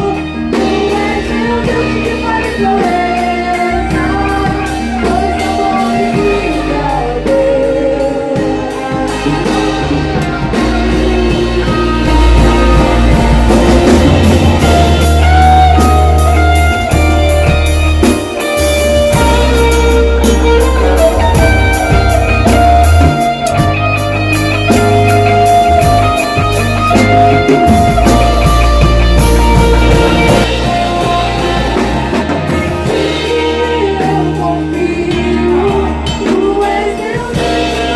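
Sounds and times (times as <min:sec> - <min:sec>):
held bass notes: 0:00.0 - 0:37.9
person singing: 0:00.0 - 0:37.9
worship band playing: 0:00.0 - 0:37.9.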